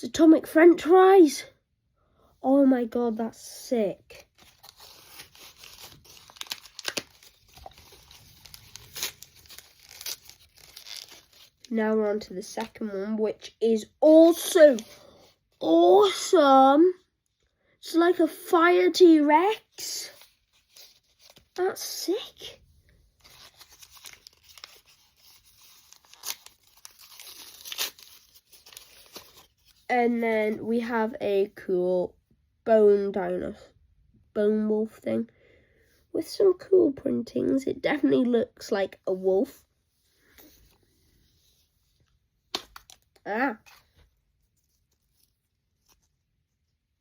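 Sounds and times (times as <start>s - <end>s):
plastic packaging crinkling and tearing: 4.1s - 11.8s, 23.2s - 29.9s
sharp plastic crackles: 4.2s - 11.8s.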